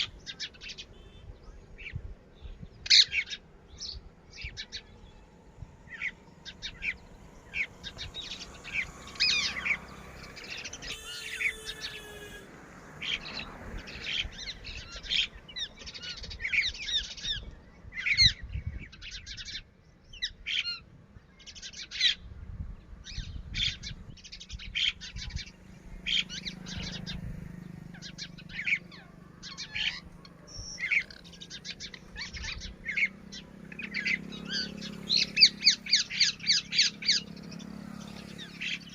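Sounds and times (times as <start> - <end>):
lapwing calling: 5.8 - 17.0, 24.8 - 38.9.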